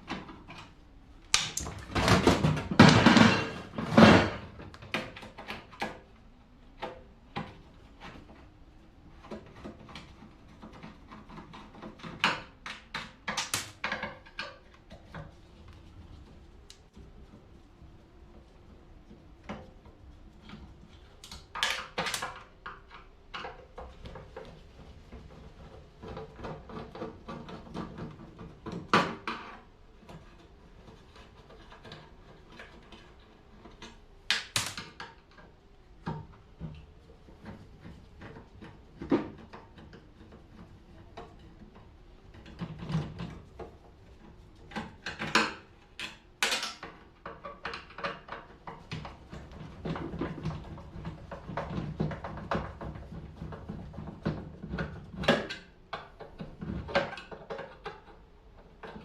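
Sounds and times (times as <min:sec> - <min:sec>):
metal clanks and rattles: 0:01.5 - 0:05.7.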